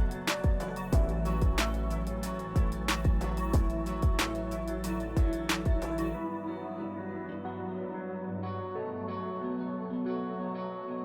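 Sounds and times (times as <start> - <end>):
drum hits: 0.0 - 1.8, 2.6 - 4.4, 5.2 - 6.0
instrumental chords: 0.0 - 8.4.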